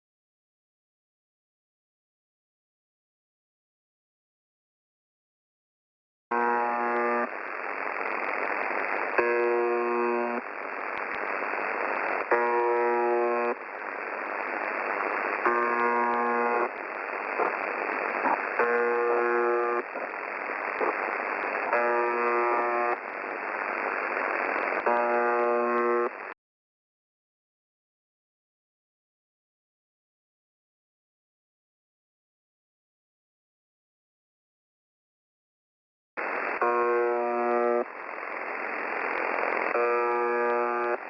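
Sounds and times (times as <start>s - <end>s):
harsh radio buzz tone: 6.3s - 26.4s, 36.2s - 41.0s
radio static hiss: 6.3s - 26.4s, 36.2s - 41.0s.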